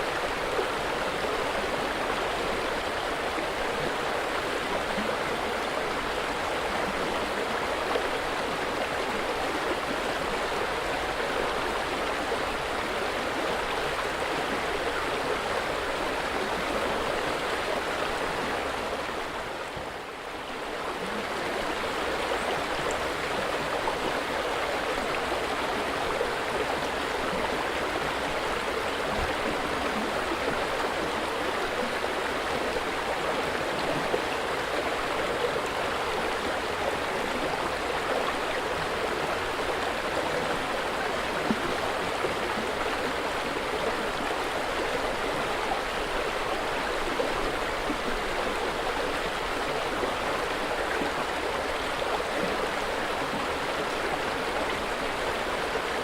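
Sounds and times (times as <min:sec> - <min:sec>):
river water flowing: 0:00.0 - 0:56.0.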